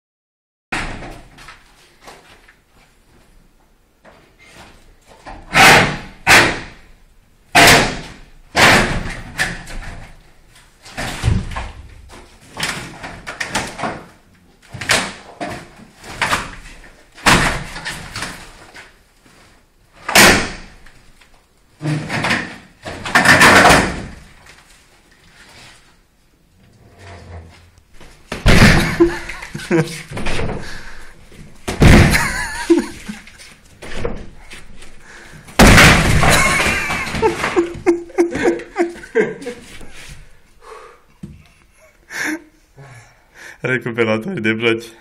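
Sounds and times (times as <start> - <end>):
plasterboard being smashed: 5.2 - 6.9, 7.5 - 10.2, 10.8 - 18.9, 20.0 - 21.1, 21.8 - 24.7, 28.0 - 39.0
crumbling clatter of board: 21.8 - 24.7, 35.6 - 38.5.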